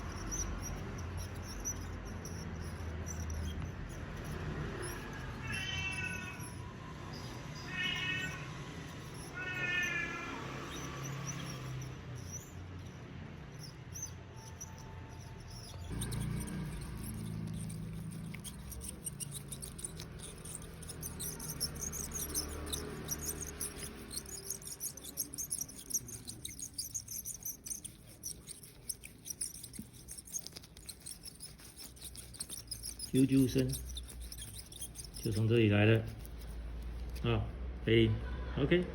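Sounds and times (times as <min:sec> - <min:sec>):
bicycle bearing squeaking chirps: 0:00.0 - 0:38.4
fast high ticking: 0:10.6 - 0:37.3.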